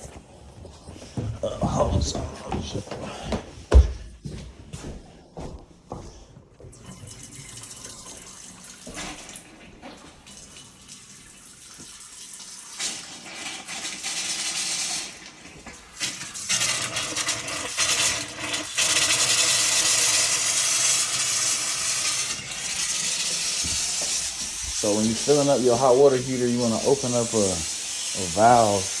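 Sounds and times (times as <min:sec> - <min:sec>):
water running from a tap: 0:06.8 - 0:29.0.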